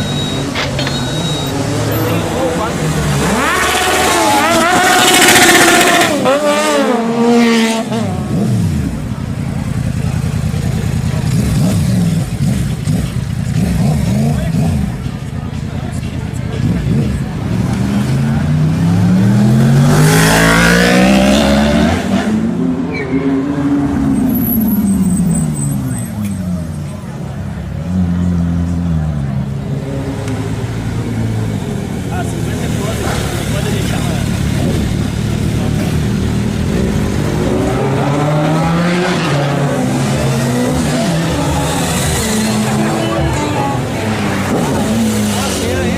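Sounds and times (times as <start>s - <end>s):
motorcycle accelerating hard: 1.5s - 15.2s, 16.5s - 26.9s, 27.8s - 45.9s.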